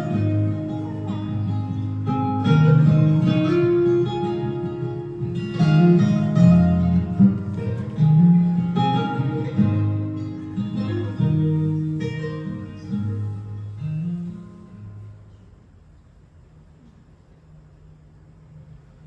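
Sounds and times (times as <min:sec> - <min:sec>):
acoustic guitar chords: 0:00.0 - 0:15.6.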